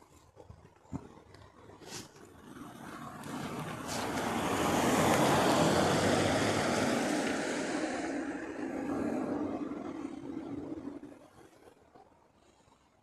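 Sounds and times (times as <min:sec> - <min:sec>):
vehicle passing: 0:02.0 - 0:11.2.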